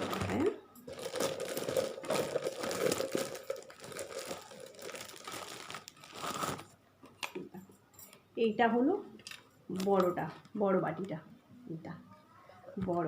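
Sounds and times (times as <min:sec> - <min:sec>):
plastic wrapping crinkling: 0:00.0 - 0:06.8.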